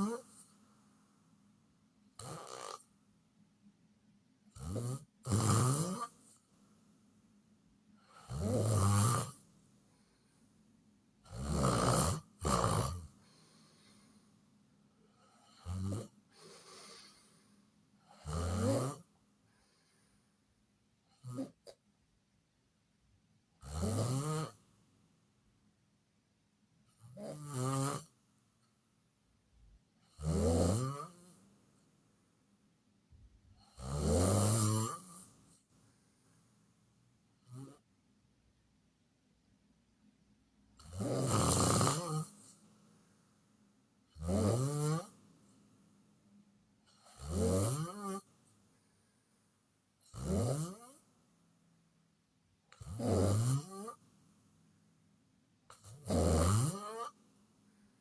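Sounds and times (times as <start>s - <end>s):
loud snoring: 0.0s - 0.5s, 2.2s - 2.9s, 4.5s - 6.4s, 8.0s - 9.4s, 11.2s - 14.0s, 15.2s - 17.4s, 18.0s - 19.1s, 21.2s - 21.8s, 23.6s - 24.6s, 27.0s - 28.1s, 30.0s - 31.4s, 33.6s - 35.4s, 37.4s - 37.8s, 40.8s - 42.6s, 44.1s - 45.2s, 46.9s - 48.3s, 50.0s - 51.0s, 52.8s - 54.0s, 55.7s - 57.2s.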